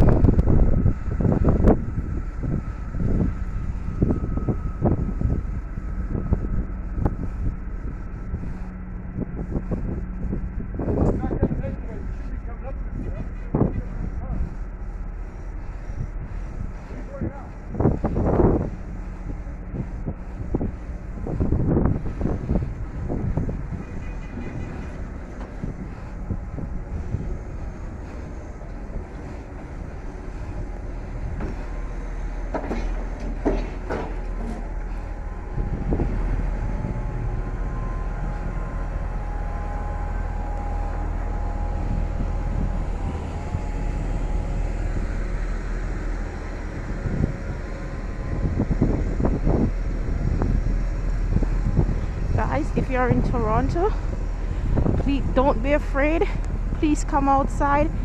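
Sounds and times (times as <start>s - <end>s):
faint steady whine: 0.0s - 58.0s
steady low rumble: 0.0s - 58.0s
wind buffeting microphone: 0.0s - 58.0s.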